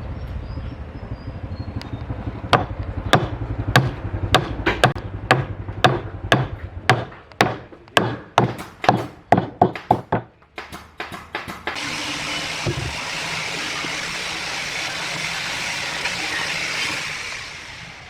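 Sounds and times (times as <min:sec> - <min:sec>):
hand tool striking wood: 0:02.6 - 0:13.0.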